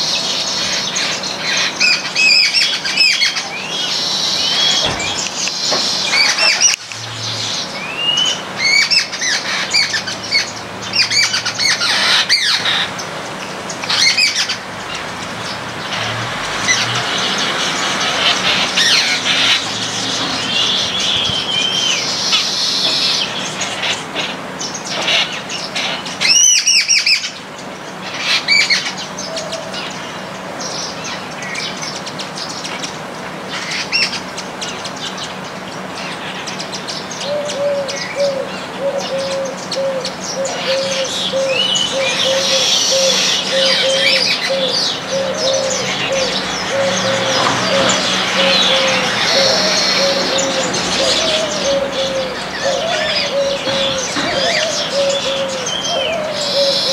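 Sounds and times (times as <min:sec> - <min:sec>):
loud bird call: 0:00.0 - 0:31.9, 0:33.5 - 0:56.9
birds chirping and chattering: 0:00.0 - 0:56.9.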